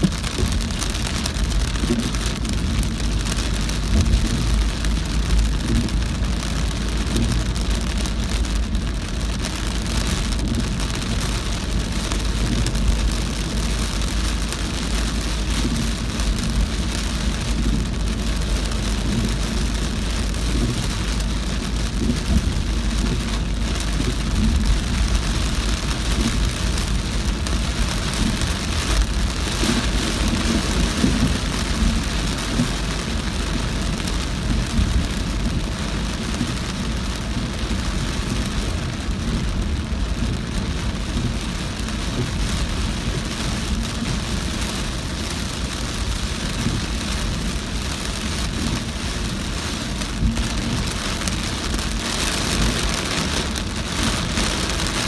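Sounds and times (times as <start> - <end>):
car tyres rumbling on wet road: 0.0 - 55.0
heavy rain beating on car: 0.0 - 55.0.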